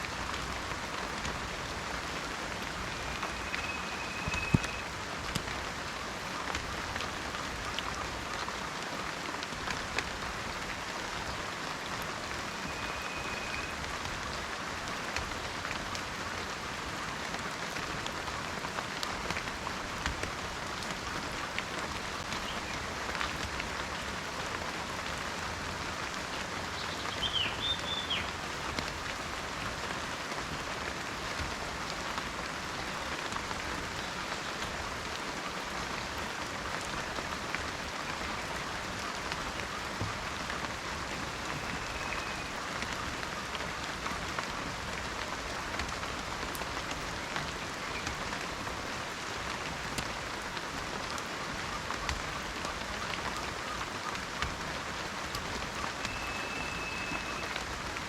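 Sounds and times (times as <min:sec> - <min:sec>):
rain on foliage: 0:00.0 - 0:58.0
faint bird whistle: 0:02.9 - 0:04.9, 0:12.5 - 0:13.8, 0:26.8 - 0:28.3, 0:41.4 - 0:42.5, 0:56.0 - 0:57.6
bird chirp: 0:03.0 - 0:04.8, 0:26.8 - 0:28.3.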